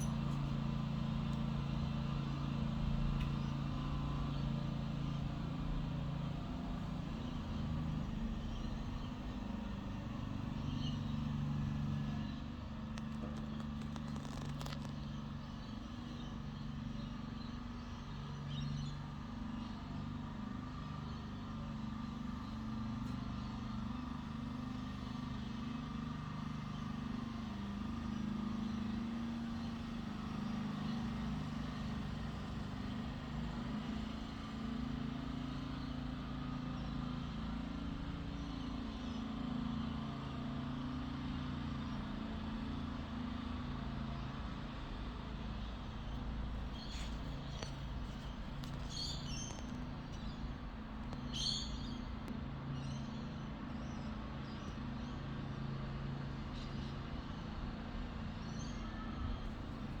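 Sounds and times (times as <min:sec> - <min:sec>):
low mechanical drone: 0:00.0 - 0:17.7, 0:45.0 - 0:53.0.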